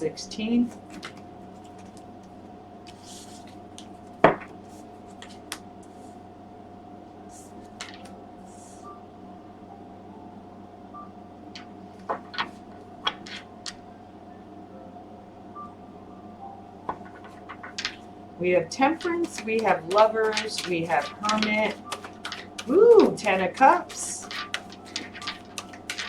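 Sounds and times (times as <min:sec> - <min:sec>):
steady hum: 0:00.0 - 0:26.0
cards clicking and snapping: 0:00.8 - 0:02.0, 0:11.6 - 0:13.8, 0:16.9 - 0:18.1, 0:19.0 - 0:26.0.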